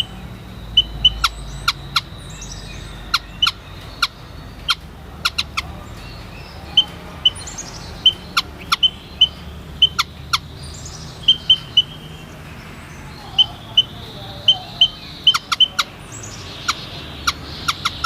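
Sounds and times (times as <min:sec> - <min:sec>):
bird calling high notes: 0:00.0 - 0:18.0.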